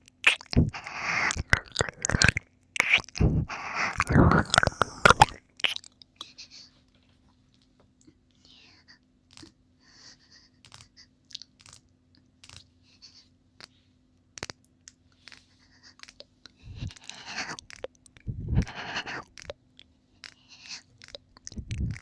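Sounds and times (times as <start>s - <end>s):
wet licking: 0.0s - 5.9s, 14.4s - 22.0s
wet tongue and lip clicks: 0.0s - 6.4s, 10.6s - 12.7s, 14.4s - 22.0s.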